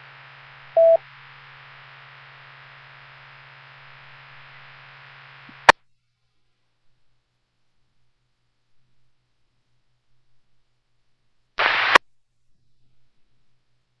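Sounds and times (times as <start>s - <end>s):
radio static hiss: 0.0s - 5.7s, 11.6s - 12.0s.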